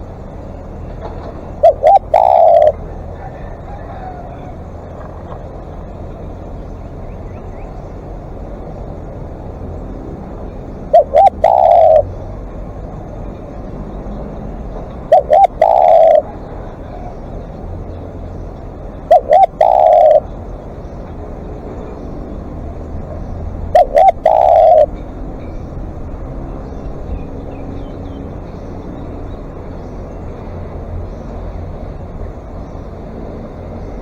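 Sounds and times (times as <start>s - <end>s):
dove cooing: 1.4s - 4.6s, 10.8s - 12.4s, 14.9s - 17.2s, 18.9s - 20.4s, 23.6s - 25.5s.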